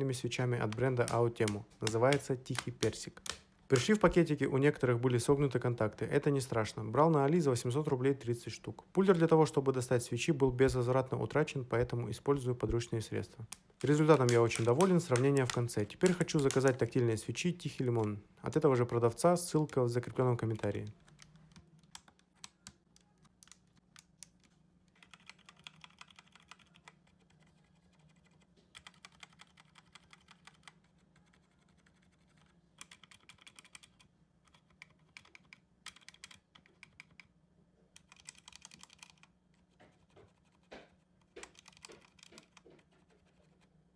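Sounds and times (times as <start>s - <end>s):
mechanical keyboard key clicks: 0.7s - 4.0s, 13.5s - 16.8s, 25.0s - 27.0s, 28.2s - 31.8s, 32.8s - 37.3s, 38.0s - 39.3s, 41.4s - 42.6s.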